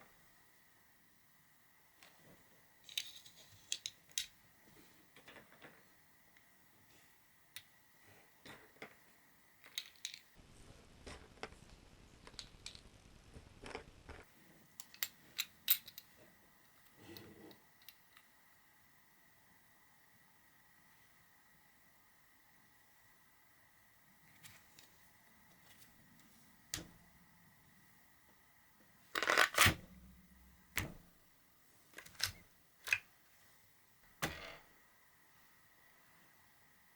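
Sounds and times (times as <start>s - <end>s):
small hard parts knocking on table: 34.2s - 34.7s.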